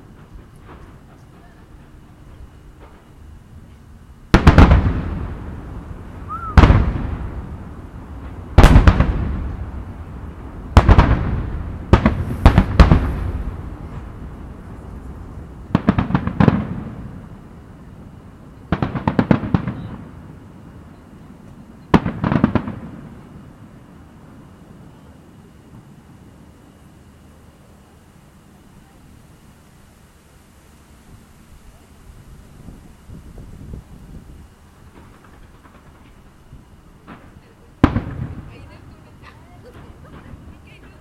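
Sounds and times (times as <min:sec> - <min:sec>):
crackling firework pops: 0:00.0 - 0:05.6, 0:06.2 - 0:09.9, 0:10.7 - 0:17.5, 0:18.1 - 0:20.2, 0:21.4 - 0:23.8, 0:32.6 - 0:41.0
firework shells booming: 0:00.0 - 0:20.8, 0:21.4 - 0:23.8, 0:33.4 - 0:41.0.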